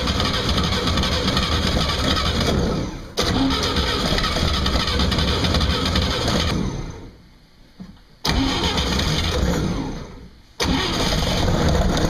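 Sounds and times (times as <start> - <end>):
engine cranking: 0.0 - 6.7, 8.3 - 9.8, 10.6 - 12.0.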